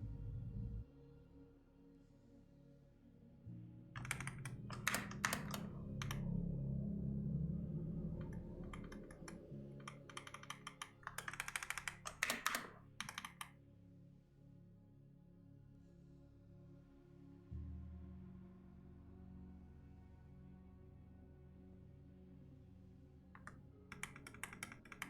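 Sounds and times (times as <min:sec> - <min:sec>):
soft ambient music: 0:00.0 - 0:25.0
typing on computer keyboard: 0:04.0 - 0:06.3, 0:08.2 - 0:13.5, 0:23.4 - 0:25.0.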